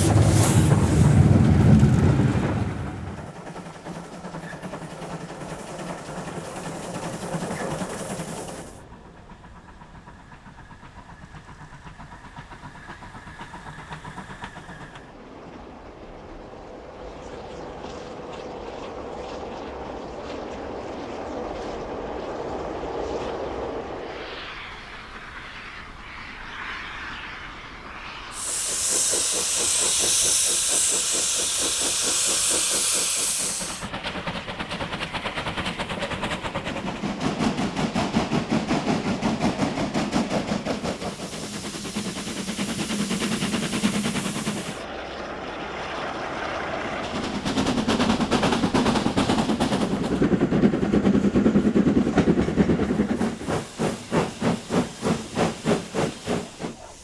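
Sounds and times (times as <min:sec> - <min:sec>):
hiss of escaping steam: 0:00.0 - 0:01.6, 0:03.9 - 0:08.9, 0:24.1 - 0:44.9, 0:52.5 - 0:57.0
steam locomotive exhaust beats: 0:00.0 - 0:15.5, 0:23.5 - 0:44.9, 0:46.9 - 0:57.0.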